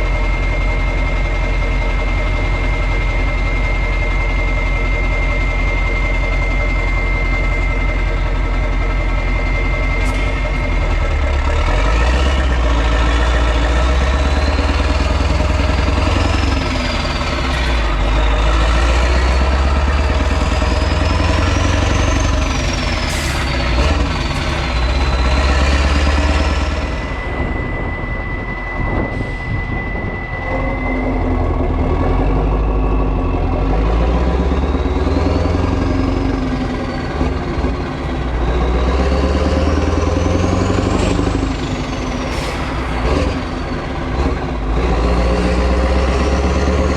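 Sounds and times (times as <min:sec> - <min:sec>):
truck diesel engine running: 0:00.0 - 0:46.9
turbo whistle: 0:13.1 - 0:34.4.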